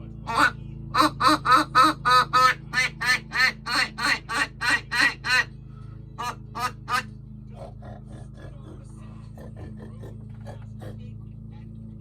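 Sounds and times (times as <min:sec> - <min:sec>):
duck quacking: 0:00.3 - 0:05.5, 0:06.2 - 0:07.1.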